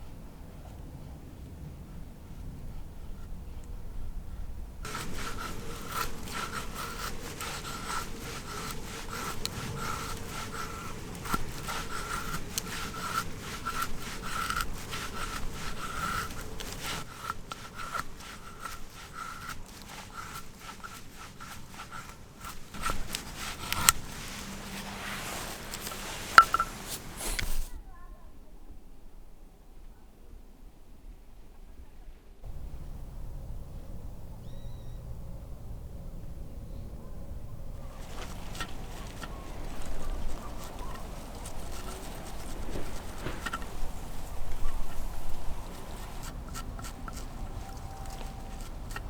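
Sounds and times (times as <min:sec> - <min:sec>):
hand saw cutting wood: 0:04.8 - 0:27.7, 0:37.9 - 0:49.0
wood cracking and clicking: 0:04.9 - 0:24.2, 0:38.0 - 0:49.0.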